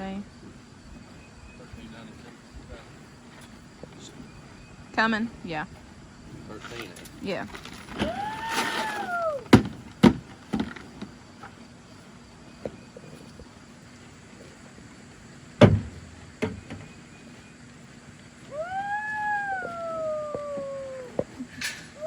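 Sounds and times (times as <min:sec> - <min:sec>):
drawn-out animal call: 0:00.0 - 0:11.5, 0:16.6 - 0:22.0
sharp knocks: 0:15.6 - 0:16.8.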